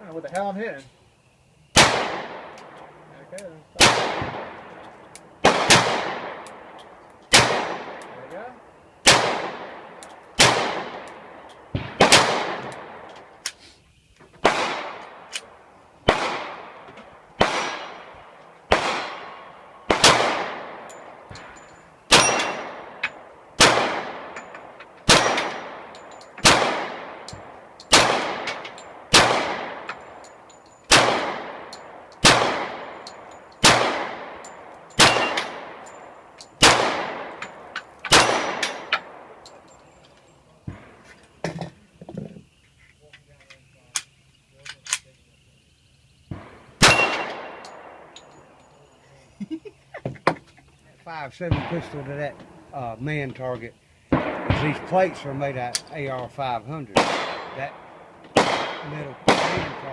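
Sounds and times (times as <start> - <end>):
pistol shots with echo: 1.7 - 3.0, 3.8 - 13.3, 14.4 - 39.6, 46.3 - 48.3, 51.5 - 52.4, 54.1 - 59.9.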